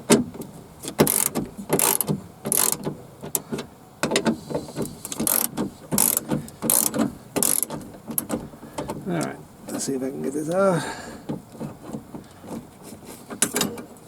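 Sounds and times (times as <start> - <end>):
hand ratchet clicking: 0.9 - 3.4, 5.0 - 8.4.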